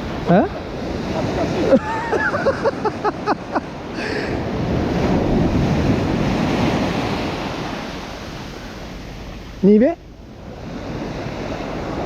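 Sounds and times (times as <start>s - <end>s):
wave washing onto beach: 0.0s - 12.0s
wind buffeting microphone: 0.0s - 12.0s.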